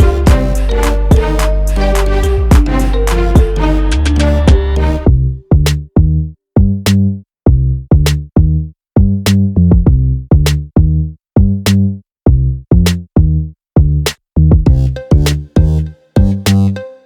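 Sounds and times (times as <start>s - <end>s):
electronic music with drum-machine beat: 0.0s - 5.7s, 14.7s - 17.0s.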